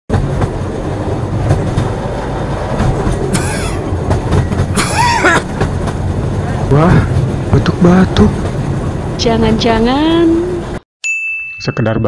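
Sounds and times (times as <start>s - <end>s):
wheels clacking over rail joints: 0.1s - 9.0s
train rumbling: 0.1s - 10.8s
person coughing: 3.3s - 3.9s, 4.8s - 5.5s.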